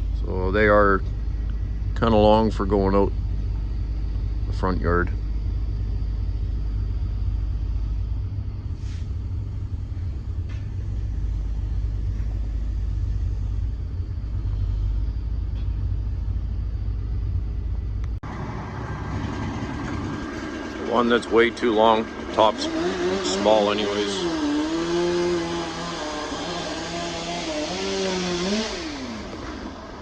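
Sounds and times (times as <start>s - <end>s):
diesel truck engine rumbling: 0.0s - 30.0s.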